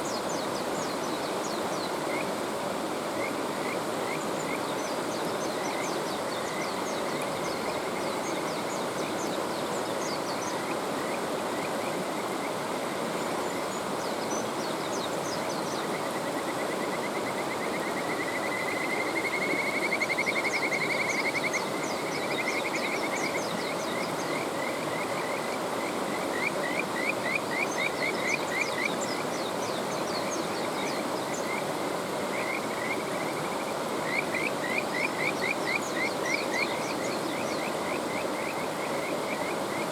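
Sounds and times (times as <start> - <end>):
rushing mountain stream: 0.0 - 39.9
frogs calling in trills: 3.1 - 9.2, 15.2 - 39.9.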